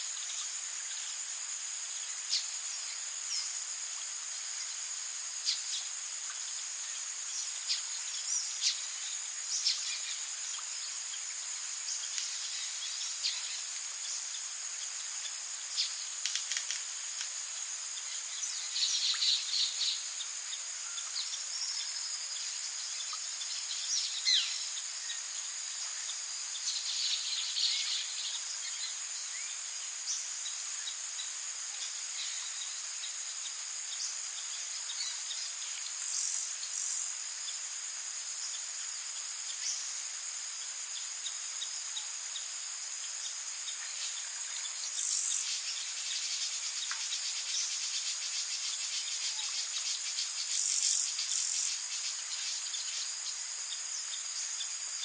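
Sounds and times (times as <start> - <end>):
faint hiss: 0.0 - 55.0
insects droning: 0.0 - 55.0.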